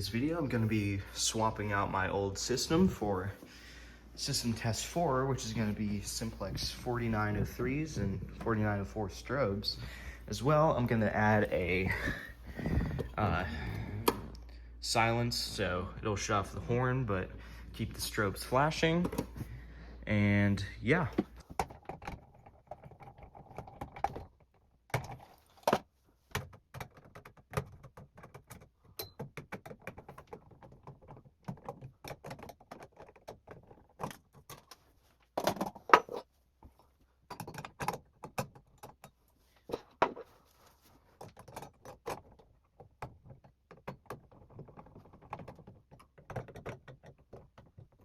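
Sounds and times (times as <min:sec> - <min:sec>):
hardware clicks and knocks: 0:18.8 - 0:19.5, 0:21.0 - 0:40.4, 0:41.0 - 0:48.0.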